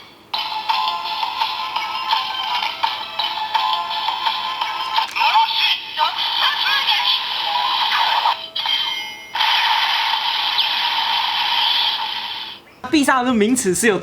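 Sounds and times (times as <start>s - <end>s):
toy synthesized music jingle: 0.4s - 9.9s.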